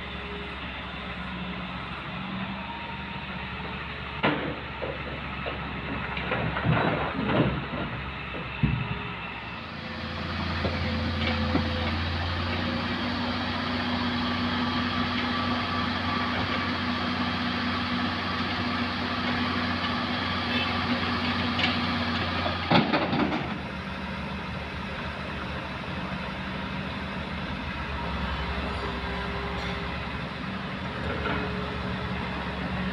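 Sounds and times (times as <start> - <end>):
heavy diesel machinery running: 0.0 - 32.9
knocks and clatter: 4.2 - 8.9, 22.4 - 23.6.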